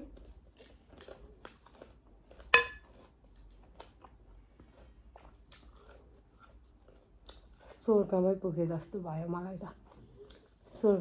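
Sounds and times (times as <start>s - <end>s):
person chewing and mouth smacks: 0.0s - 7.7s, 9.8s - 10.8s.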